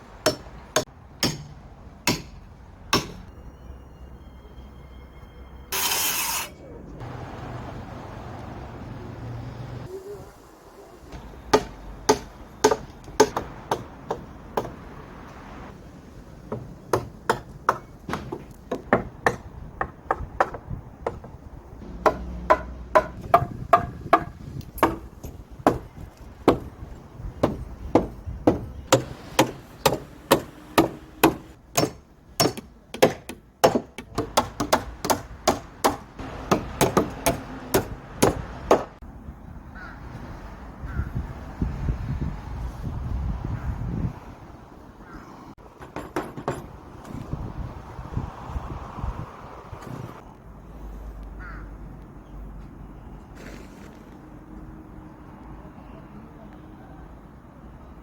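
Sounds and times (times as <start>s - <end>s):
hammer striking wood: 0.2s - 3.2s, 11.5s - 14.8s, 16.5s - 26.7s, 27.4s - 39.0s, 45.8s - 46.7s.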